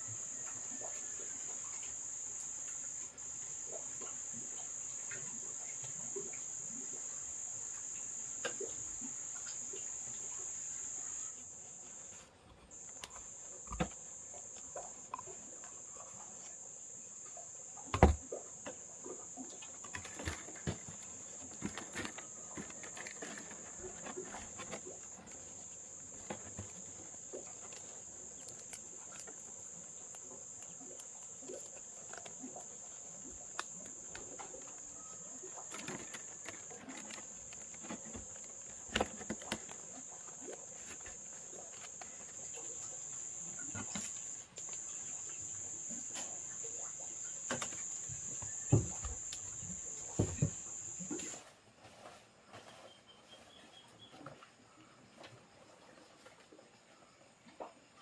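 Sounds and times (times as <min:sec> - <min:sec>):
high-pitched insect trilling: 0:00.0 - 0:12.0, 0:21.6 - 0:51.2.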